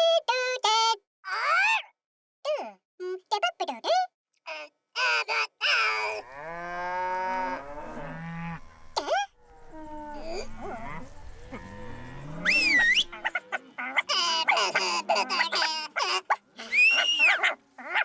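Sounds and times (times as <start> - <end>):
cow mooing: 6.0 - 13.4
high squeaky call: 9.6 - 13.4.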